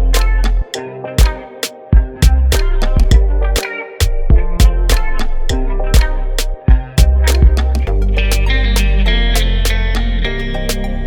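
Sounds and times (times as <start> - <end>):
deep bass: 0.0 - 0.7, 2.2 - 11.0
held synth notes: 0.0 - 11.0
drum hits: 2.0 - 3.2, 6.7 - 7.8.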